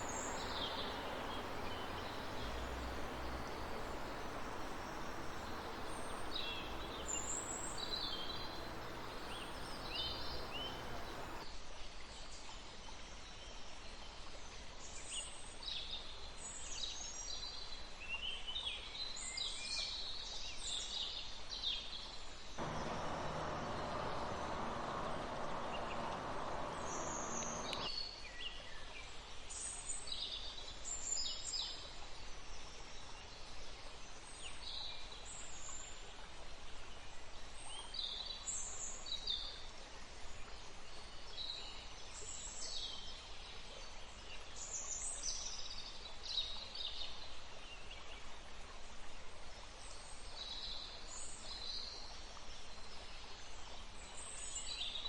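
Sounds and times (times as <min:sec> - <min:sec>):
low rushing noise: 0:00.0 - 0:11.4, 0:22.6 - 0:27.9
songbirds chirping: 0:00.0 - 0:11.4, 0:22.6 - 0:27.9.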